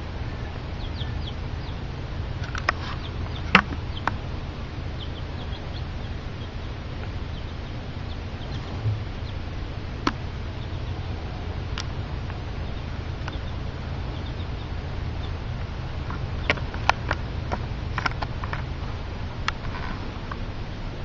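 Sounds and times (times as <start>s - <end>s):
steady low hum: 0.0s - 21.0s
small animal clicks and taps: 13.2s - 13.5s.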